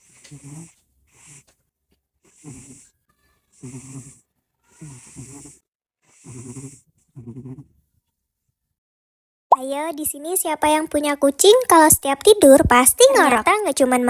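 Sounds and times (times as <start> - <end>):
cat snoring: 0.0 - 1.6, 2.2 - 7.8.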